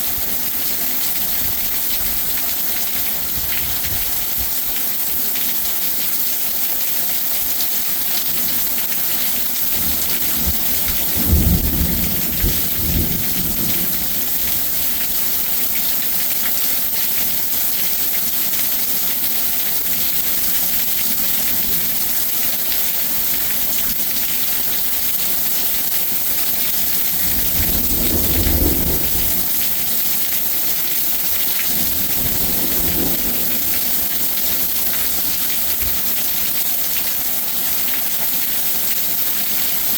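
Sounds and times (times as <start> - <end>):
heavy rain hissing: 8.5 - 37.9
rolling thunder: 9.8 - 15.1, 26.8 - 29.9, 31.7 - 34.8.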